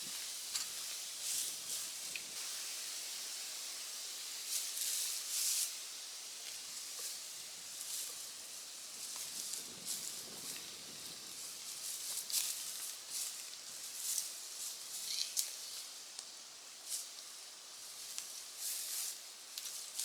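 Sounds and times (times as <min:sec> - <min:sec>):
faint outdoor hiss: 0:00.0 - 0:20.0
rustling and crunching: 0:09.0 - 0:15.9.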